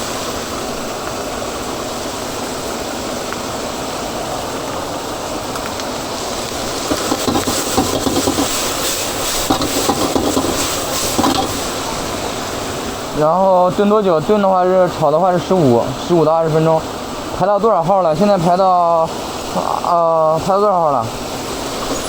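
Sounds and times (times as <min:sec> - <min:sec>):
background noise: 0:00.0 - 0:22.0
pans and utensils clattering: 0:06.6 - 0:11.9.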